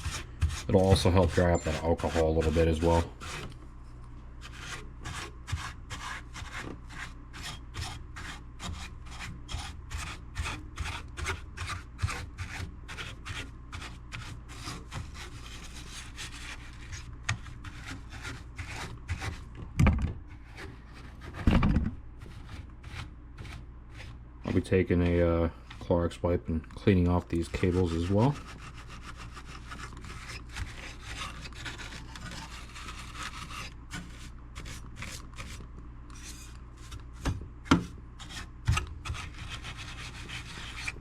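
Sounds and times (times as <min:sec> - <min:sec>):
brush scrubbing circuit board: 0:00.0 - 0:03.5, 0:27.3 - 0:35.6, 0:39.1 - 0:41.0.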